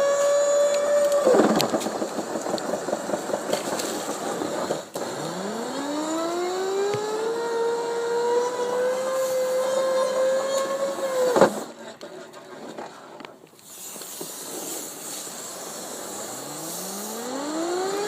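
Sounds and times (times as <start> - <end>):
electric motor whining and humming: 0.0 - 11.7, 14.9 - 18.0
rattling scraping noise: 0.1 - 5.0.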